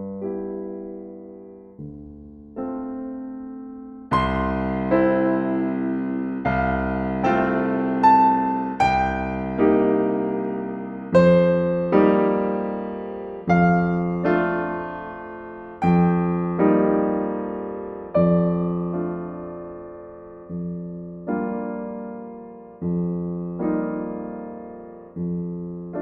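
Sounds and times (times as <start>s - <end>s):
gentle solo piano chords: 0.0s - 26.0s.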